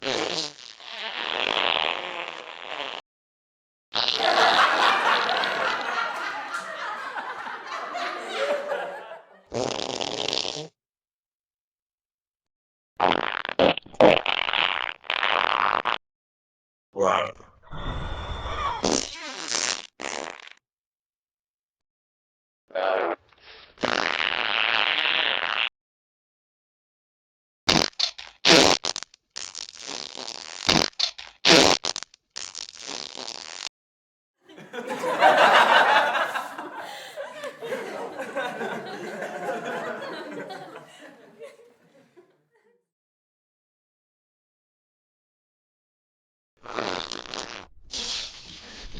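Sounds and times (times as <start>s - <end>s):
fart sound effects: 0.0s - 3.0s, 4.0s - 5.9s, 9.5s - 10.8s, 13.0s - 16.0s, 17.4s - 20.6s, 22.7s - 25.7s, 27.7s - 33.7s, 46.6s - 48.9s.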